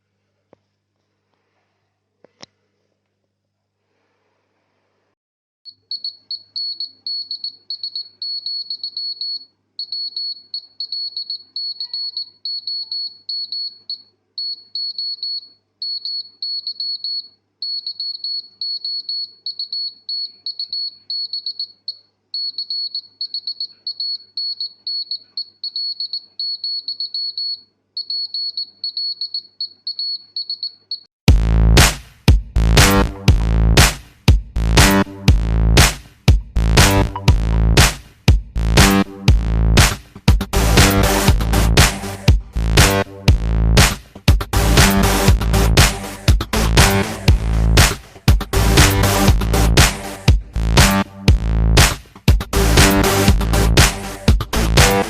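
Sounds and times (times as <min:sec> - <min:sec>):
morse code beeps: 0:36.9 - 0:37.8.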